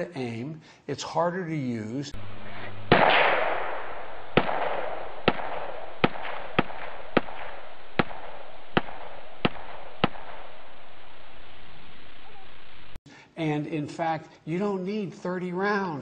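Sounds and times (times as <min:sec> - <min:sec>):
steady hiss: 0:02.0 - 0:14.6
sharp bangs: 0:02.2 - 0:11.0.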